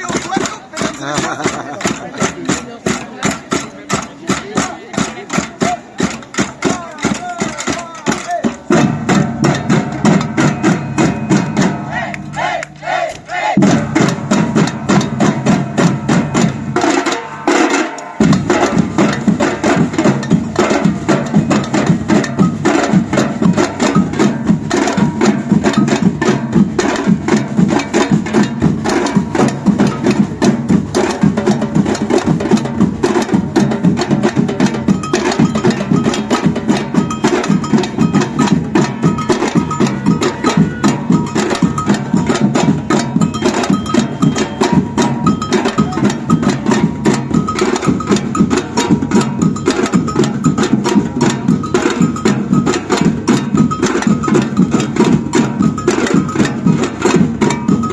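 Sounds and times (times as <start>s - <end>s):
samba drums playing: 0.0s - 57.9s
bell pattern ringing: 34.6s - 57.9s.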